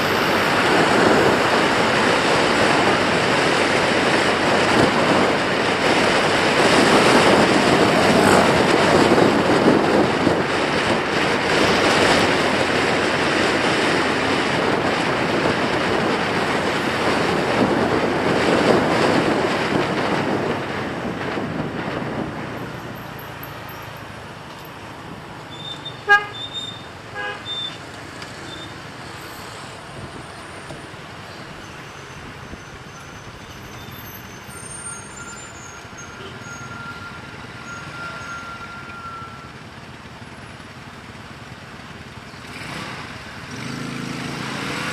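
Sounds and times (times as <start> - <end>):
motorbike wind and road noise: 0.0 - 44.9
street traffic: 0.0 - 44.9
vehicle horn toot: 26.0 - 27.8.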